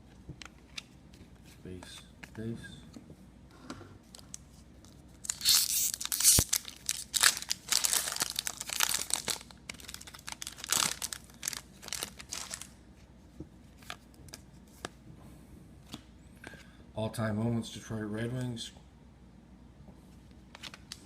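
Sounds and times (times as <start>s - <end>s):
card pack wrapper tearing: 5.2s - 12.7s.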